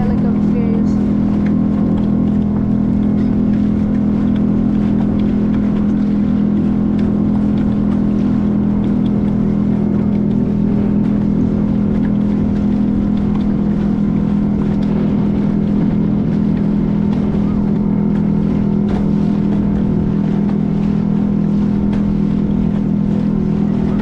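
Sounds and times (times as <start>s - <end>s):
boat engine humming: 0.0s - 24.0s.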